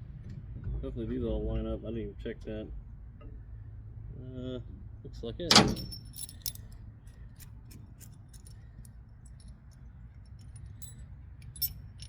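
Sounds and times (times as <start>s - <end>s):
metal bolts clicking and clinking: 5.5s - 12.0s.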